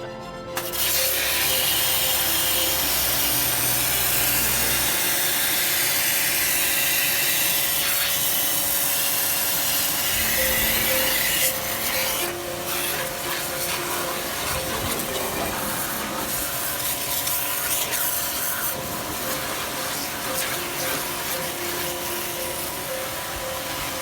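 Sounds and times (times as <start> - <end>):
pressure washer motor hum: 0.6 - 24.0
pressure washer spraying water: 0.6 - 24.0.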